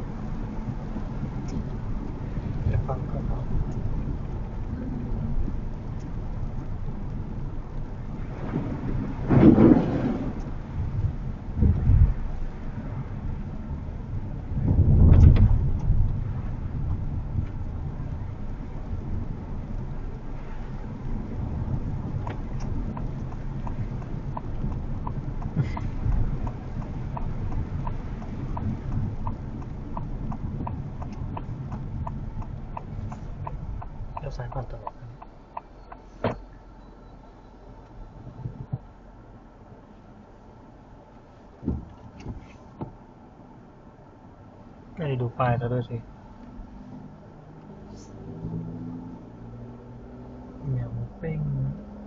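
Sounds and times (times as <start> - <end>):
road and tyre rumble inside car: 0.0 - 52.0
turn signal ticking: 0.3 - 7.9, 15.6 - 20.3, 21.0 - 39.0.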